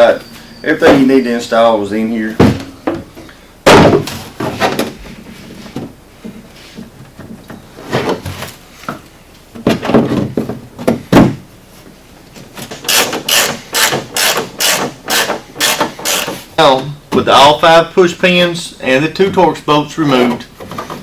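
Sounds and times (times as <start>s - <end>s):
plastic panel knocks and clunks: 2.4s - 3.1s, 3.7s - 5.0s, 9.6s - 11.4s.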